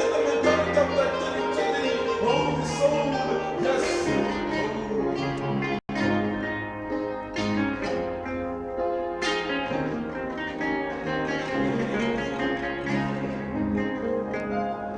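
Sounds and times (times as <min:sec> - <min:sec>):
plucked guitar music: 0:00.0 - 0:14.9.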